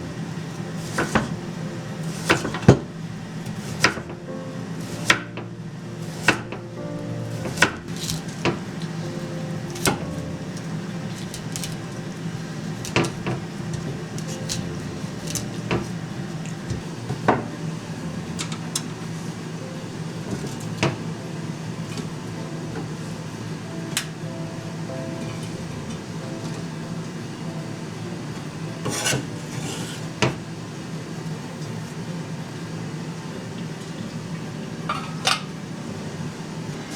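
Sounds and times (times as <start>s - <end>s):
soft background music: 0.0s - 36.9s
dishes and utensils clinking: 34.9s - 35.6s.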